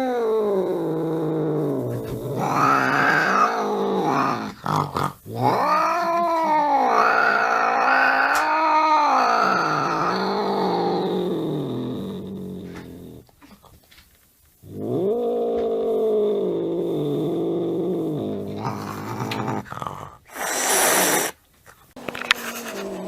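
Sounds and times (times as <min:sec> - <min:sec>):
cat growling: 0:00.0 - 0:13.7, 0:14.6 - 0:23.0
cat hissing: 0:18.0 - 0:23.0.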